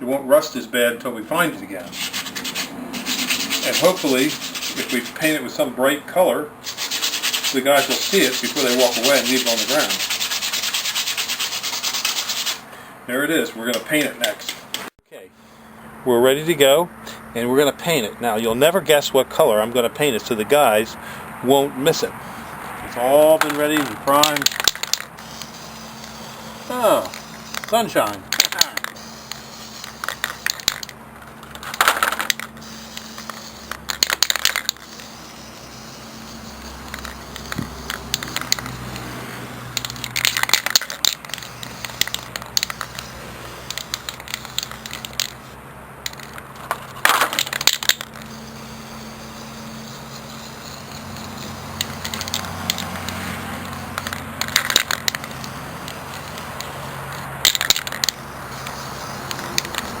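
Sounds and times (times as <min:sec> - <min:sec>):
steady low hum: 0:00.0 - 1:00.0
spray paint can bursts: 0:01.8 - 0:05.3, 0:06.6 - 0:12.6, 0:23.4 - 1:00.0.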